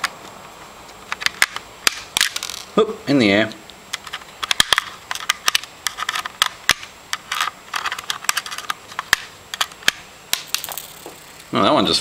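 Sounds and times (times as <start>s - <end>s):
screwdriver clicking and scraping: 7.2s - 10.0s.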